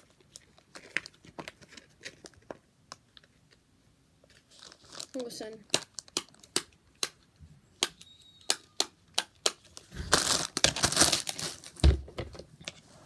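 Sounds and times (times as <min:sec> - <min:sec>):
plastic crinkling: 0:00.0 - 0:03.3, 0:04.2 - 0:06.6, 0:09.5 - 0:12.1.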